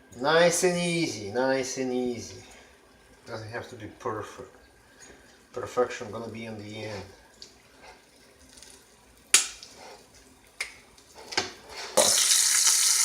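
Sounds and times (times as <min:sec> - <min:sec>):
meat searing in hot oil: 0:05.4 - 0:13.0.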